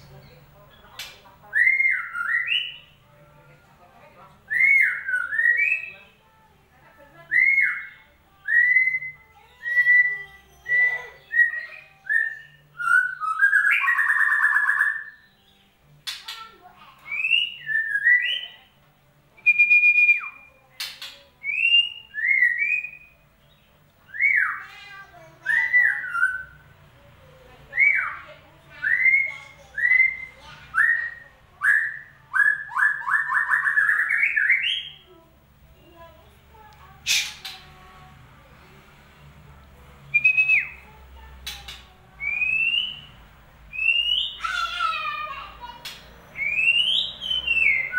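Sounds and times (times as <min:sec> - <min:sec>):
bird whistled song: 0:01.0 - 0:03.0, 0:04.5 - 0:06.0, 0:07.3 - 0:16.3, 0:17.0 - 0:18.6, 0:19.4 - 0:24.6, 0:25.4 - 0:26.6, 0:27.8 - 0:28.2, 0:28.8 - 0:35.0, 0:37.1 - 0:37.6, 0:40.1 - 0:40.8, 0:41.4 - 0:44.6, 0:45.8 - 0:47.9
bird whistling upslurred notes: 0:42.2 - 0:43.1, 0:43.7 - 0:44.4, 0:46.3 - 0:47.9.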